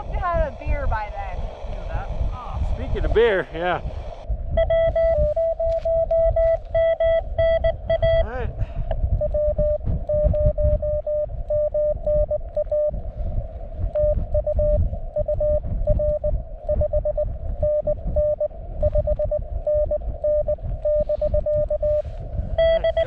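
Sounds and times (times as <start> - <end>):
loud low rumbling noise: 0.0 - 23.0
morse code beeps: 4.6 - 8.3, 9.1 - 13.0, 13.9 - 23.0.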